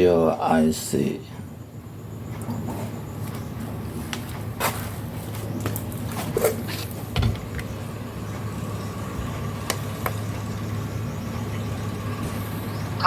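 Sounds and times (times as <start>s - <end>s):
low background hum: 0.0s - 13.0s.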